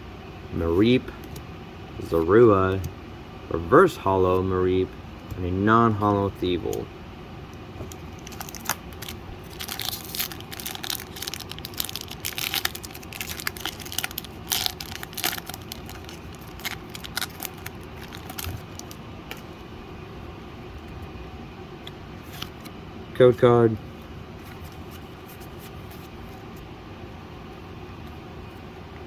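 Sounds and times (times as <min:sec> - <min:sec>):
foil wrapper crinkling and tearing: 0:07.9 - 0:19.4.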